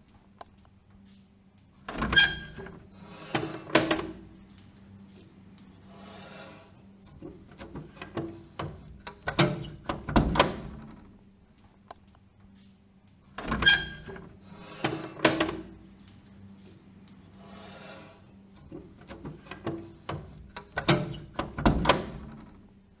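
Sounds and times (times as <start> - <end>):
window sliding rub: 5.8 - 10.8, 17.3 - 22.6.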